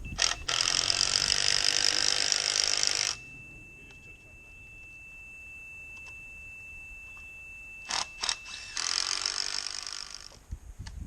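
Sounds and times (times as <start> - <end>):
faint high-pitched tone: 0.0 - 10.3
loud power tool cutting: 0.2 - 3.3, 7.8 - 10.4.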